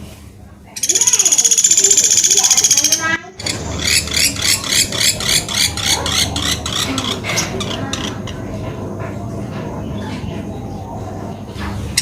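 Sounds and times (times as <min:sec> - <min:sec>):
bird calling rapid high notes: 0:00.8 - 0:08.5.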